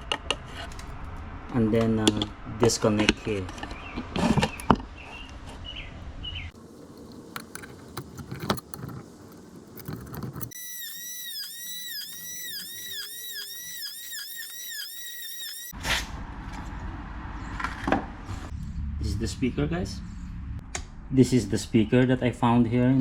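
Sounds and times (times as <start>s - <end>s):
tools clicking and knocking: 6.9s - 10.6s
high warbling tone: 10.6s - 15.7s.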